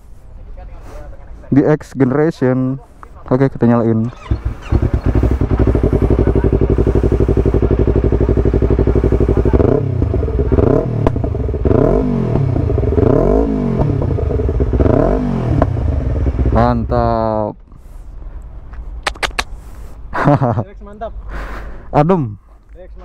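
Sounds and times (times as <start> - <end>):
motorcycle starting and idling: 4.0 - 17.1
motorcycle revving: 4.0 - 17.3
exhaust pop: 11.0 - 11.4.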